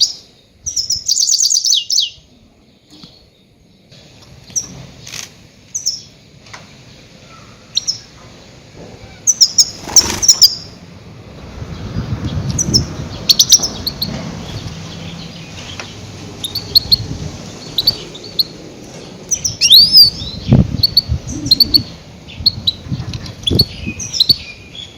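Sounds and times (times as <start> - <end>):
goldfinch high chirps: 0.0 - 2.3, 7.2 - 8.1, 9.2 - 10.8, 12.5 - 14.1, 15.0 - 24.9.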